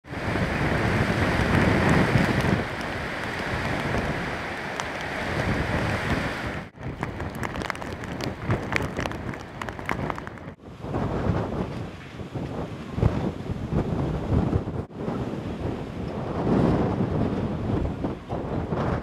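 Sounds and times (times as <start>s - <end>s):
wind buffeting microphone: 0.0s - 19.0s
waves crashing: 0.1s - 11.6s
sharp crackles: 1.4s - 6.2s, 6.8s - 10.6s.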